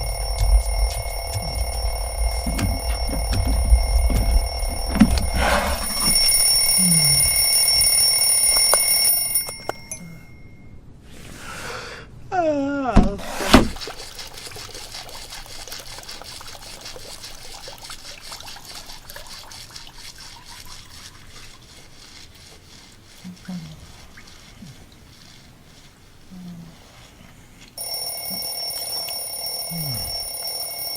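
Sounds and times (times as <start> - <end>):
electronic alarm ringing: 0.0 - 10.7, 27.8 - 30.9
short falling wavering tone: 0.0 - 10.7.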